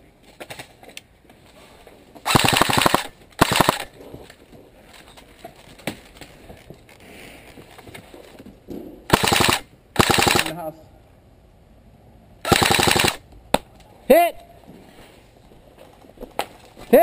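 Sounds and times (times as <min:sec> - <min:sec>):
airsoft rifle full-auto bursts: 0:02.3 - 0:03.9, 0:09.1 - 0:10.6, 0:12.4 - 0:13.2.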